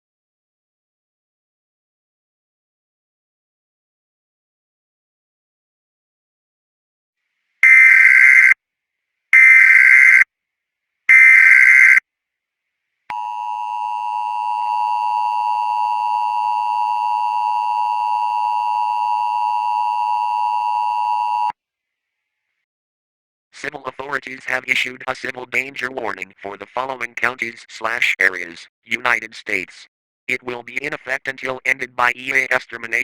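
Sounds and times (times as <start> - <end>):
screechy digital data bursts: 7.6 - 8.6, 9.4 - 10.2, 11.1 - 12.0.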